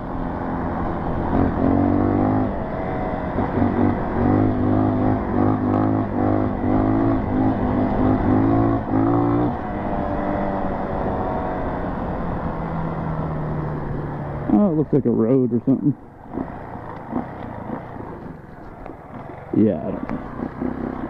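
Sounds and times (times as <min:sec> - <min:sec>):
dirt bike engine revving: 0:01.0 - 0:11.7, 0:16.2 - 0:21.0.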